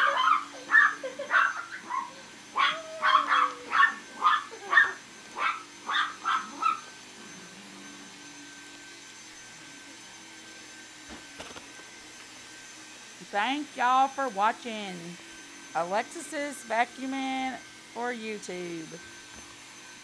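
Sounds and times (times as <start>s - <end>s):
dog yapping: 0.0s - 6.9s.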